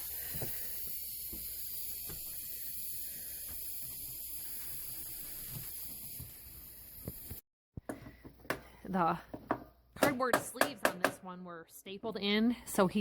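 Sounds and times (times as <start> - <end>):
steady hiss: 0.0 - 7.4.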